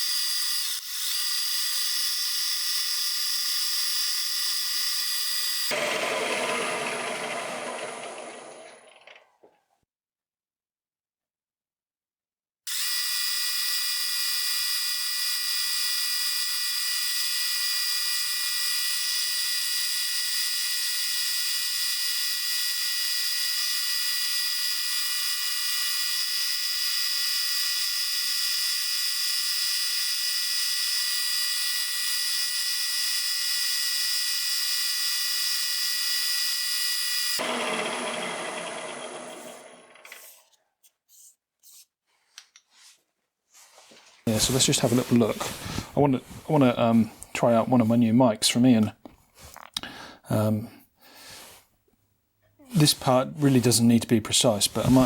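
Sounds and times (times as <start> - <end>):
milling machine spindle whine: 4.3 - 9.2, 27.8 - 40.4.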